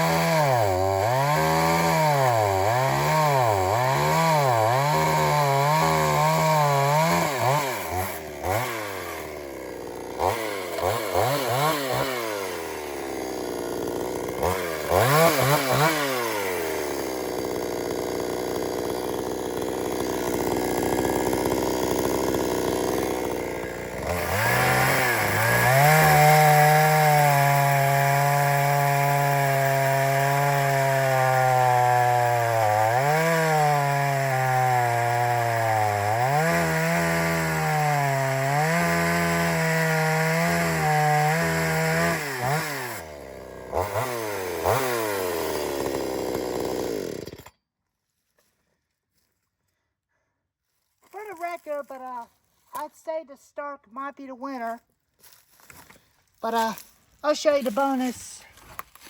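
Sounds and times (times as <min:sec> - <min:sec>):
chainsaw cutting log: 0:00.0 - 0:47.6, 0:51.0 - 0:52.9, 0:54.0 - 0:59.0.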